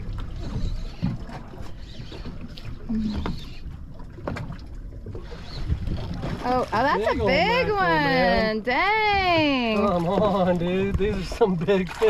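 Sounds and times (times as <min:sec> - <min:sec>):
water moving against kayak hull: 0:00.0 - 0:12.0
light knocks against boat: 0:00.2 - 0:04.6.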